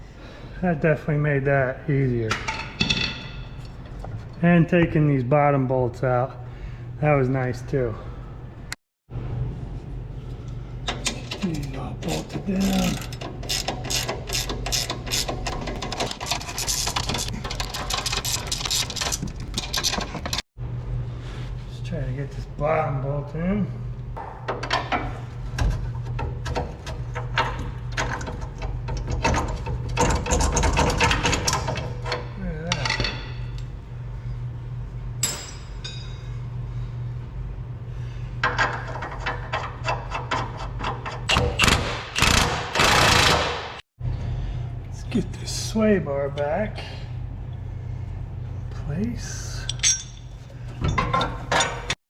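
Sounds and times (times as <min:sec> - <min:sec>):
ratchet wrench clicking: 0:12.9 - 0:15.4
low hum: 0:44.0 - 0:51.9
metallic clink: 0:49.7 - 0:51.0.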